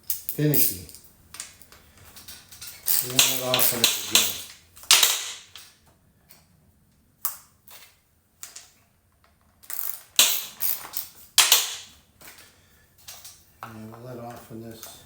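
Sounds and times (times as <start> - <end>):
metallic clicks on chainsaw chain: 2.2 - 5.6.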